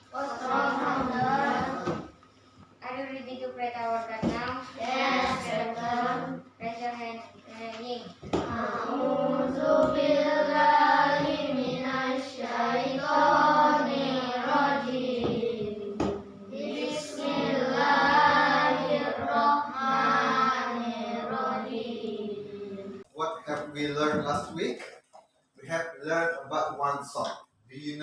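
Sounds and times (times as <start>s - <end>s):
children chanting a prayer: 0.0s - 2.1s, 4.2s - 6.4s, 8.3s - 23.0s.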